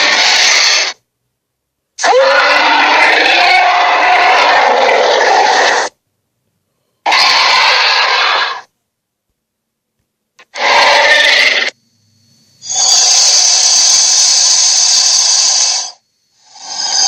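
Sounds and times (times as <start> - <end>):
harsh cartoon monster roar: 0.0 - 1.0, 2.0 - 6.0, 7.1 - 8.7, 10.5 - 11.8.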